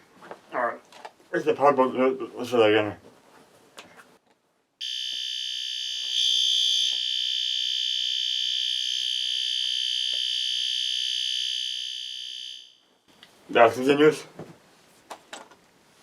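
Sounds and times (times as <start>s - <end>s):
fire alarm horn continuous tone: 4.8s - 13.0s.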